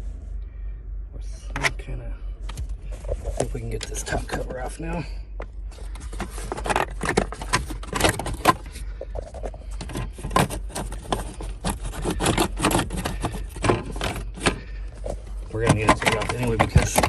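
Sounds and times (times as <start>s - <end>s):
prying plastic cover clicks and scrapes: 5.9s - 17.0s.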